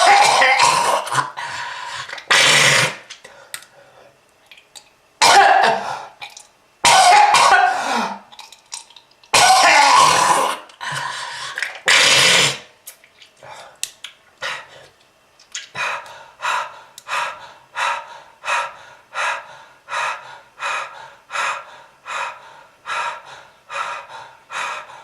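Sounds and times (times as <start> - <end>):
person coughing in hacking fits: 0.0 - 1.3, 5.2 - 6.0, 6.8 - 8.2, 9.3 - 10.6.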